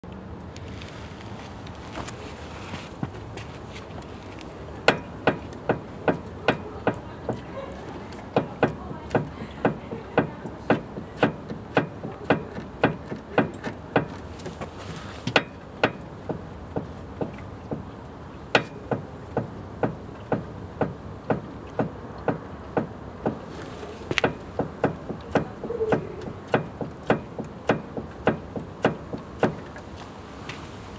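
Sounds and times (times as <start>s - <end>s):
sharp knocks from car front end: 4.8s - 7.5s, 8.3s - 17.9s, 18.5s - 29.8s.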